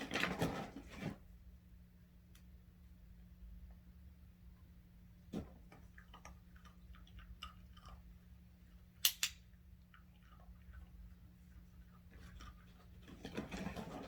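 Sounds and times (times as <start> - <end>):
sharp snaps: 9.0 - 9.4.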